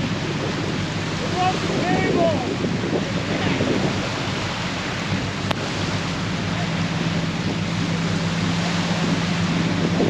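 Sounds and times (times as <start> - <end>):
low engine hum: 0.0 - 10.0
water rushing: 0.0 - 10.0
wind buffeting microphone: 0.0 - 10.0.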